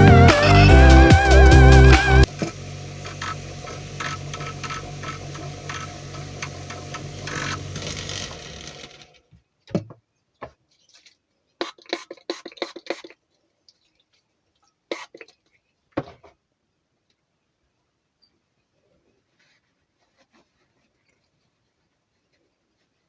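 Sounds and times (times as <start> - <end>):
rotary tool running: 0.0 - 9.2.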